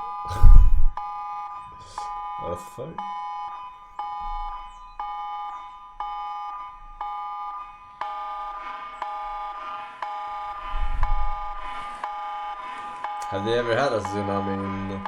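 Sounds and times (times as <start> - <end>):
emergency alert beeps: 0.0 - 15.0
low rumbling thump: 0.3 - 1.0.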